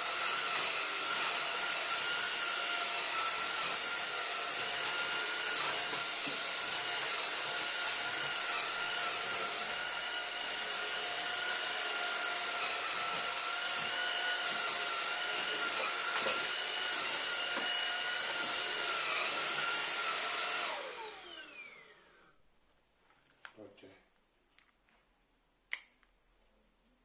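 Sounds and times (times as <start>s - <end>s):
vacuum cleaner running: 0.0s - 22.4s.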